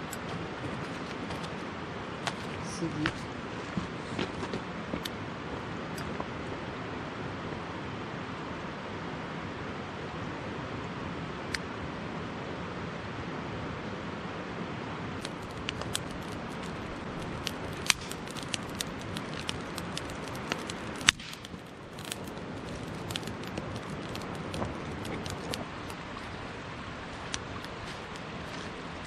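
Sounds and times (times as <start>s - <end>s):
stream rushing: 6.6s - 29.0s
campfire crackling: 14.8s - 29.0s.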